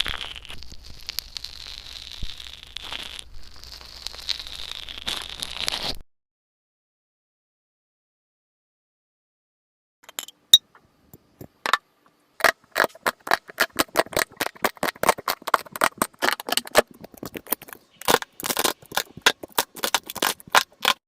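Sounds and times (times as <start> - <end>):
slime crackling and popping: 0.0 - 6.0, 12.4 - 21.0.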